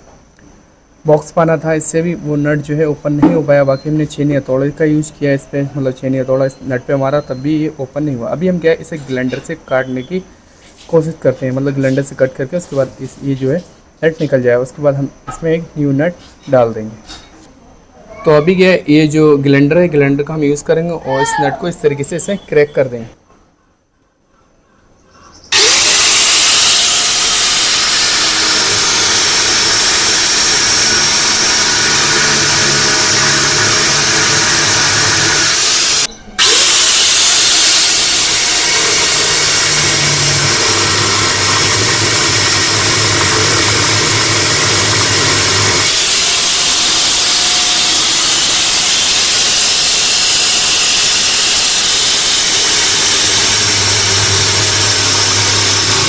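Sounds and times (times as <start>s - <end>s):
angle grinder cutting metal: 25.5s - 56.0s.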